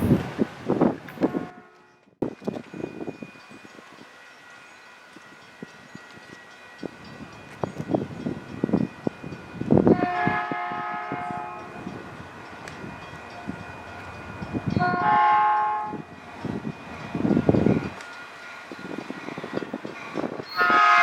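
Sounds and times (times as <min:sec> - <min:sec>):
train rumbling: 0:00.0 - 0:21.0
locomotive air horn blasts: 0:01.3 - 0:01.9, 0:09.9 - 0:11.8, 0:14.8 - 0:16.1, 0:20.6 - 0:21.0.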